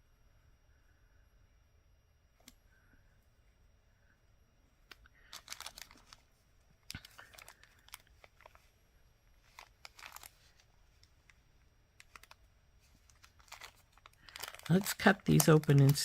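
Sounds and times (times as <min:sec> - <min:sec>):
plastic bags crinkling: 0:05.2 - 0:08.7, 0:09.4 - 0:11.1, 0:12.0 - 0:16.0
beads clicking: 0:12.0 - 0:12.4, 0:13.0 - 0:16.0.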